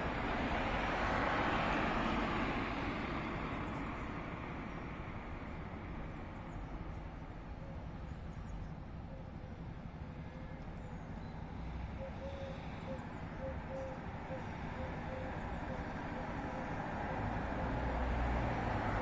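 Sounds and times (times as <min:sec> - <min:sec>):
passing cars rumbling: 0:00.0 - 0:19.0.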